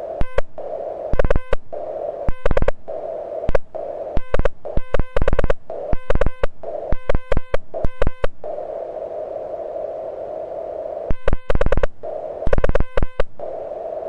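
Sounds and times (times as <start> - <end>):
radio receiver hiss: 0.0 - 14.0
morse code sidetone beeps: 0.2 - 8.6, 11.1 - 13.6.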